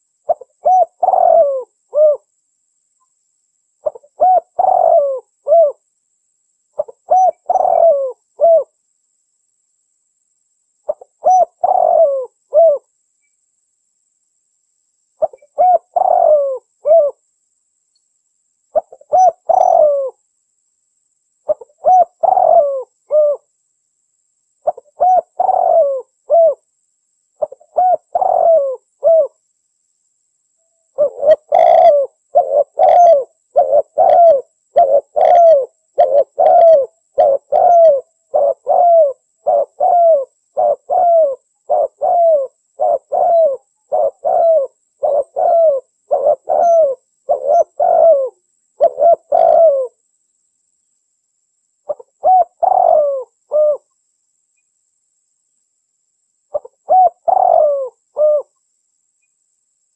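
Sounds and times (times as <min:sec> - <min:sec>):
dove cooing: 0:00.0 - 0:02.3, 0:03.8 - 0:05.8, 0:06.8 - 0:08.8, 0:10.9 - 0:12.9, 0:15.2 - 0:17.2, 0:18.7 - 0:20.2, 0:21.5 - 0:23.5, 0:24.6 - 0:26.6, 0:27.4 - 0:29.4, 0:30.9 - 0:50.0, 0:51.9 - 0:53.9, 0:56.5 - 0:58.6.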